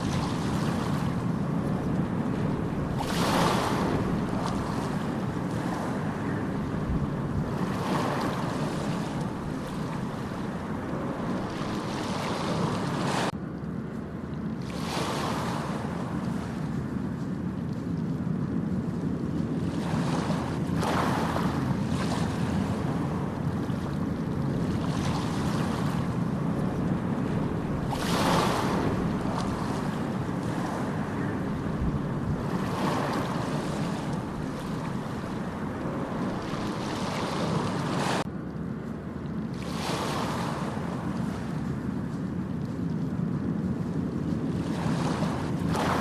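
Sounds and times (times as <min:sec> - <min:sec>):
waves breaking with hiss: 0:00.0 - 0:13.4, 0:19.6 - 0:38.3, 0:39.6 - 0:42.2, 0:44.4 - 0:46.0
waves rumbling: 0:00.0 - 0:46.0.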